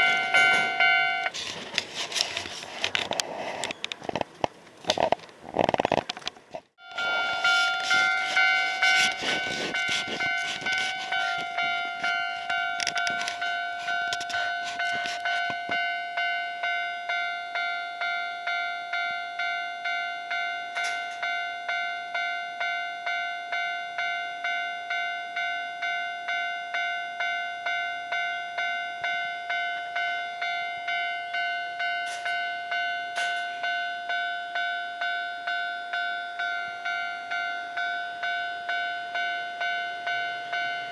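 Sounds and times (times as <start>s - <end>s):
level crossing warning bell: 0.0s - 1.4s, 6.8s - 40.9s.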